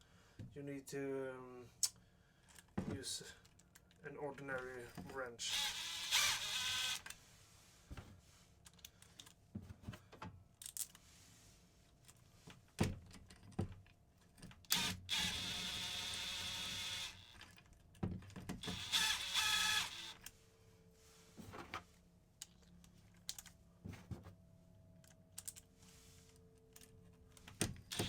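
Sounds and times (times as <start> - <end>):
power driver spinning: 5.5 - 7.0, 14.8 - 17.4, 18.6 - 20.3.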